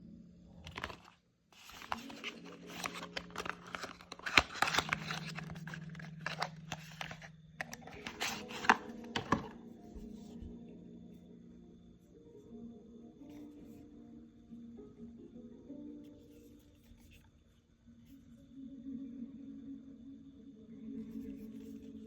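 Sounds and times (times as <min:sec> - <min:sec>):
cardboard tearing and crinkling: 0:00.7 - 0:09.5.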